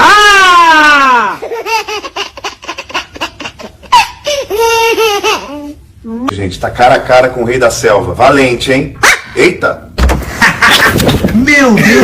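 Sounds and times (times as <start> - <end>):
high-pitched laughter: 0.2 - 5.8.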